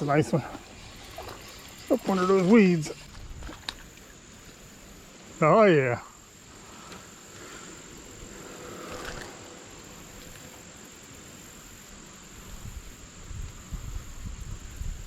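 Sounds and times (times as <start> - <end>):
crickets trilling: 0.0 - 15.0.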